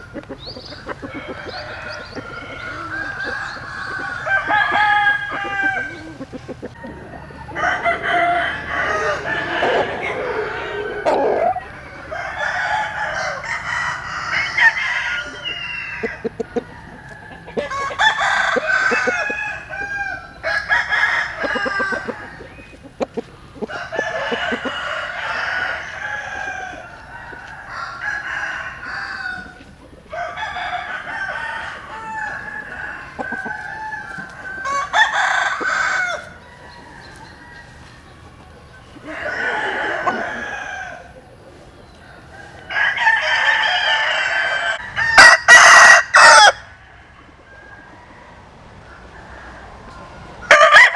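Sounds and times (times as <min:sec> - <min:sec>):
roosters crowing: 0:00.0 - 0:50.9.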